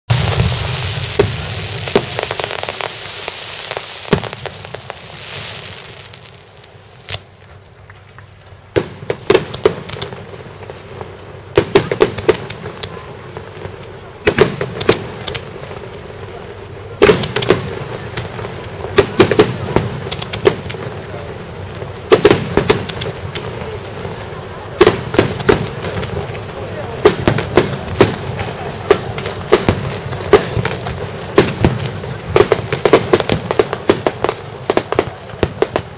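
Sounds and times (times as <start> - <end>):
firework shells bursting: 0.1 - 10.7, 11.6 - 13.0, 17.0 - 21.2, 21.8 - 24.2
even hiss: 0.1 - 35.9.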